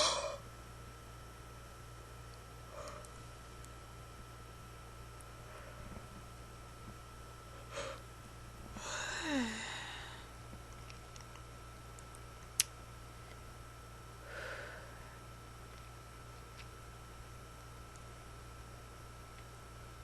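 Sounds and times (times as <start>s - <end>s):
breathing in and out: 0.0s - 0.4s, 2.6s - 3.3s, 5.4s - 6.2s, 7.5s - 8.1s, 8.7s - 10.4s, 14.2s - 15.3s
person yawning: 0.0s - 0.4s, 8.8s - 10.2s.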